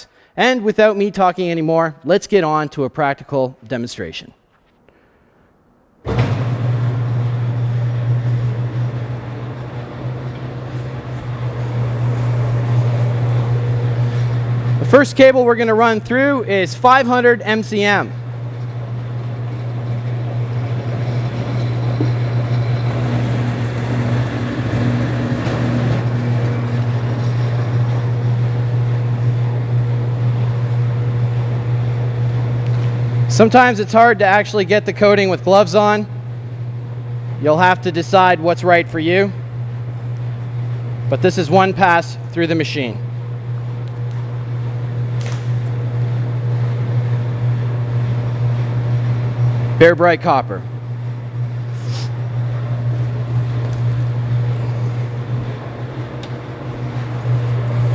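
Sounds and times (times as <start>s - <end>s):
electric motor hum: 6.0s - 57.9s
cable feeding through blades: 6.1s - 32.0s.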